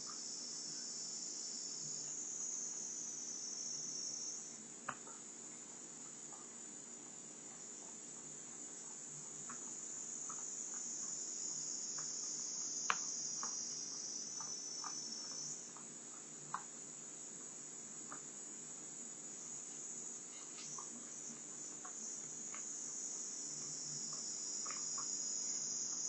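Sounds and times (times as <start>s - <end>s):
insects chirring: 0.0s - 26.0s
faint ticks: 4.8s - 16.7s, 17.4s - 18.3s, 19.6s - 26.0s.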